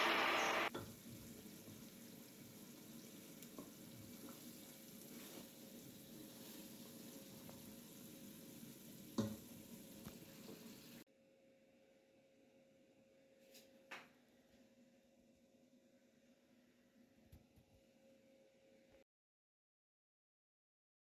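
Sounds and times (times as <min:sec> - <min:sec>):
faint steady hiss: 0:00.0 - 0:11.0.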